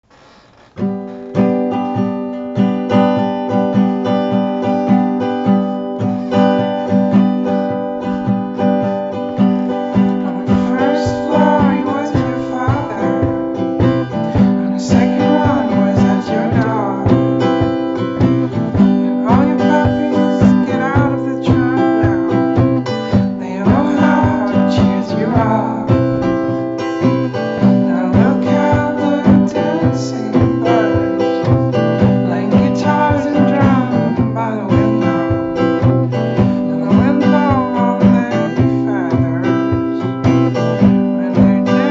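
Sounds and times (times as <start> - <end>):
acoustic guitar plucked rhythm: 0.0 - 41.9.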